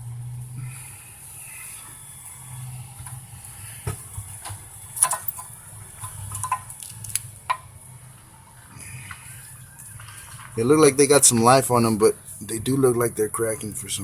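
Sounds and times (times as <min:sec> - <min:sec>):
metallic clicks and clinks: 0:05.0 - 0:07.2.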